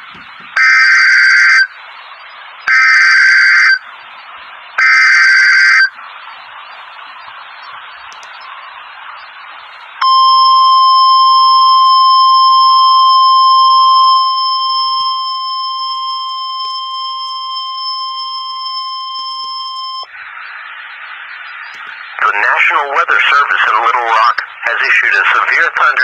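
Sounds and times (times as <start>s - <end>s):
steady alarm tone: 0.5s - 1.8s, 2.6s - 4.0s, 4.8s - 20.6s
radio hiss: 20.1s - 26.0s.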